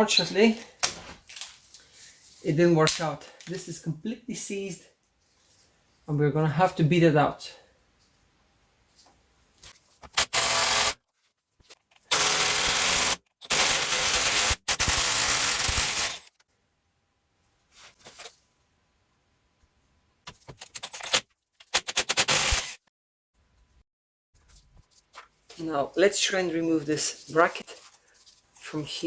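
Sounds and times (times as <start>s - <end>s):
pneumatic air hammer blows: 10.2s - 11.0s, 12.1s - 16.2s, 21.8s - 22.8s.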